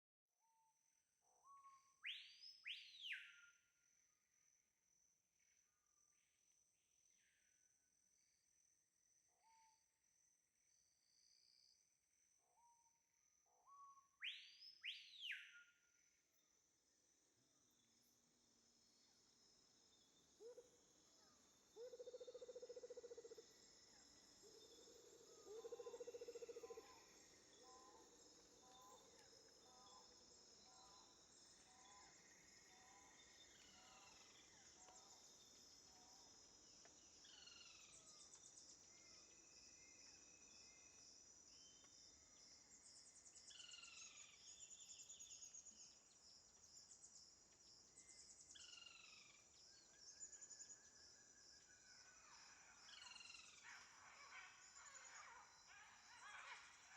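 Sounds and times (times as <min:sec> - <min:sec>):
insects chorus: 0:17.3 - 0:56.9.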